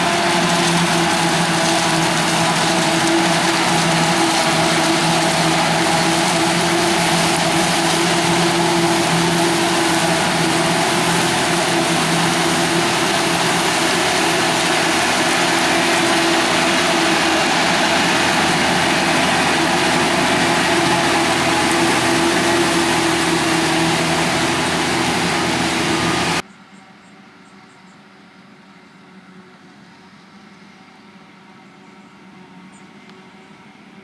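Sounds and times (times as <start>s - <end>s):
farm machinery engine drone: 0.0s - 26.4s.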